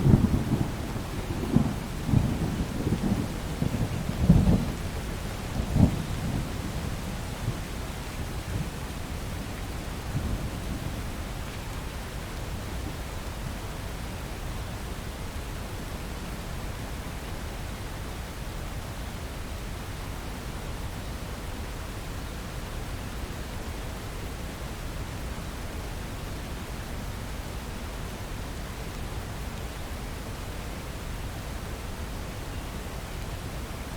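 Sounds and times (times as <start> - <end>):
thunder rolling: 0.0 - 7.0
steady rain: 0.0 - 33.9.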